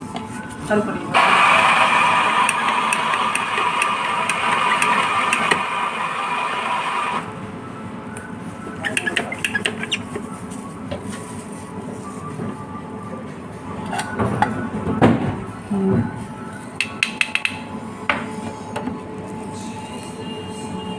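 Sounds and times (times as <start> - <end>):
coffee machine whirring: 1.1 - 7.3.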